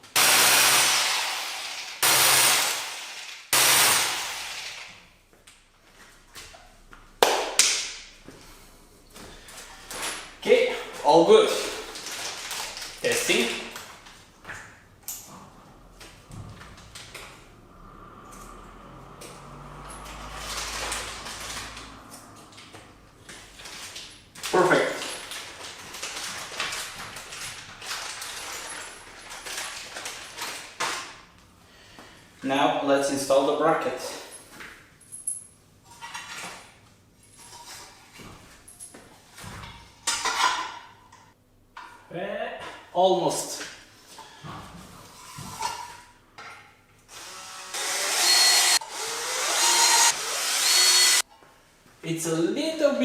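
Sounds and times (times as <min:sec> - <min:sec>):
power drill driving screws: 0:00.1 - 0:05.0, 0:47.1 - 0:51.2
hardware rustling and clattering: 0:07.8 - 0:17.6, 0:19.4 - 0:31.3, 0:34.1 - 0:42.9, 0:43.5 - 0:46.9.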